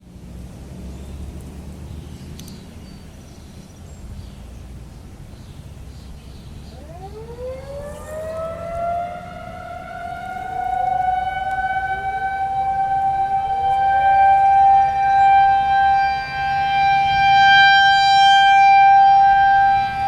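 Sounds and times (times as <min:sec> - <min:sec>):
tornado siren winding up: 0:06.7 - 0:20.0.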